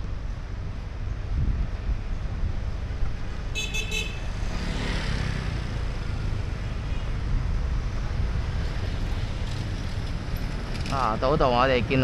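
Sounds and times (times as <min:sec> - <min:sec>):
road traffic rumble: 0:00.0 - 0:12.0
wind on microphone: 0:00.6 - 0:03.5, 0:07.0 - 0:10.9
vehicle horn toots: 0:03.6 - 0:04.3
vehicle passing close: 0:04.2 - 0:06.5.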